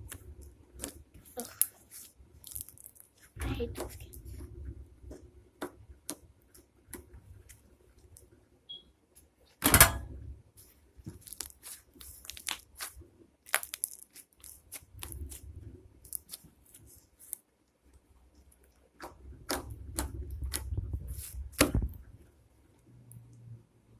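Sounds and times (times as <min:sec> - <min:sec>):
slime squished by hand: 0:11.0 - 0:17.4, 0:18.7 - 0:22.1.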